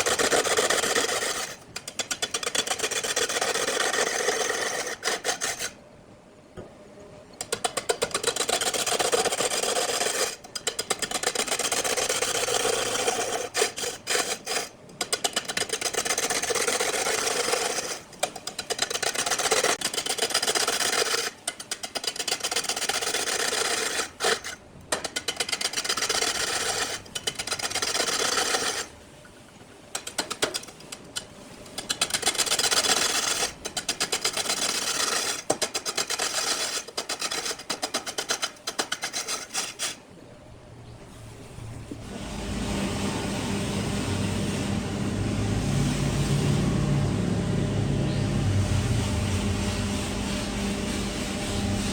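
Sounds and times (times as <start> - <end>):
lathe tool scraping wood: 25.2 - 28.9, 30.0 - 40.0, 42.0 - 51.9.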